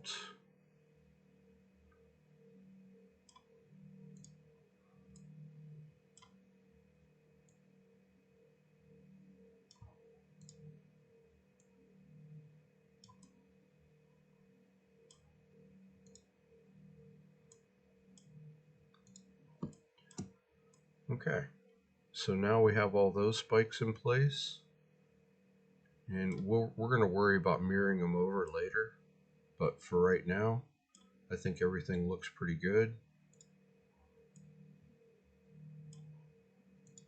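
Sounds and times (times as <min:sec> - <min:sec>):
low electrical hum: 0:00.0 - 0:37.0.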